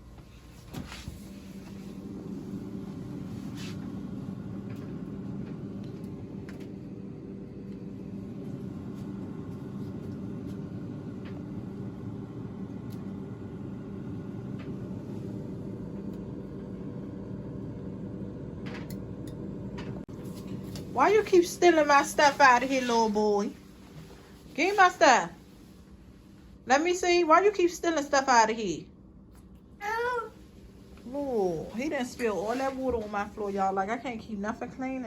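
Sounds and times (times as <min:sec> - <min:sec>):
steady mechanical hum: 0:00.0 - 0:35.0.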